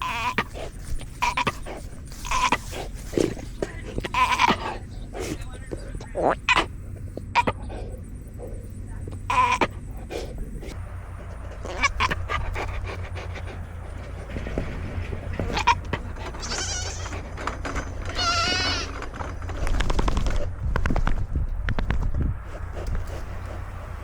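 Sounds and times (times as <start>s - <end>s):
goats bleating: 0.0s - 7.7s, 9.1s - 19.3s
camera rumble: 0.0s - 24.0s
scattered knocks: 10.8s - 23.0s.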